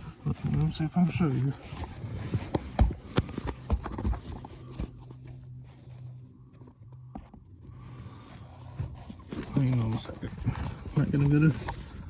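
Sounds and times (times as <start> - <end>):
handling knocks and rustles: 0.0 - 7.7
low steady hum: 0.0 - 12.0.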